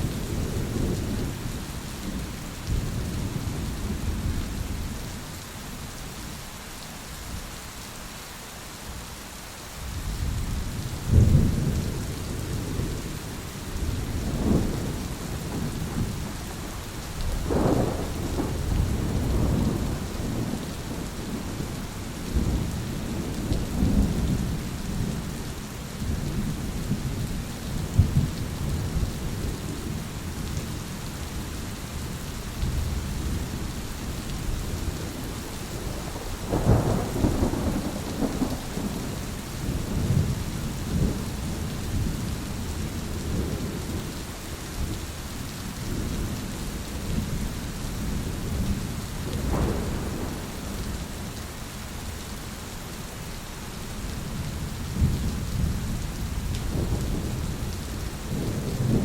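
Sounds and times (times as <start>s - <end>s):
steady rain: 0.0s - 59.0s
thunder rumbling: 11.0s - 25.4s, 32.6s - 44.1s, 48.0s - 51.4s, 54.2s - 59.0s.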